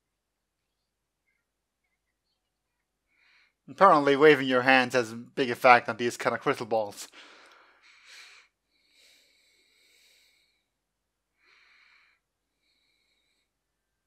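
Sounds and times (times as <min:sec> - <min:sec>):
faint breathy hisses: 0:07.1 - 0:10.7, 0:11.4 - 0:13.5.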